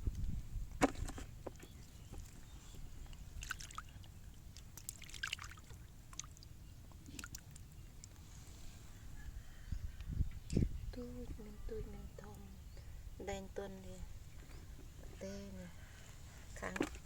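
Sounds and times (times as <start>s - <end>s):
splashing in shallow water: 3.1s - 8.1s.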